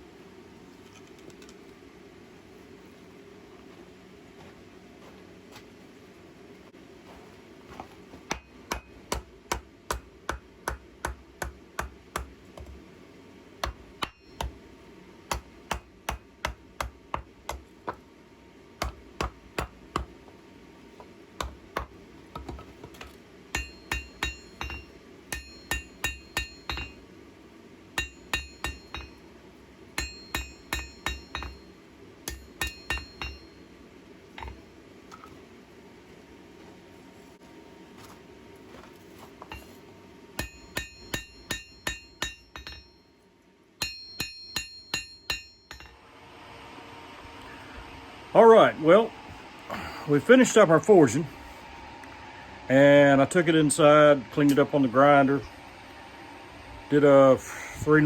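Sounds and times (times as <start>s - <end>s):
hammer striking hot steel on anvil: 8.3s - 12.8s, 13.6s - 14.6s, 15.2s - 18.0s, 18.8s - 20.2s, 21.4s - 22.5s, 23.5s - 27.0s, 28.0s - 29.3s, 29.9s - 33.7s, 34.4s - 34.6s, 40.4s - 43.1s, 43.8s - 46.0s.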